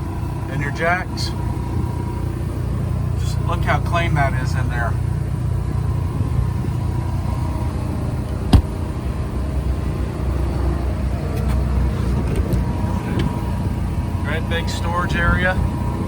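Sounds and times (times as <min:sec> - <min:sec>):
low rumble: 0:04.6 - 0:10.1.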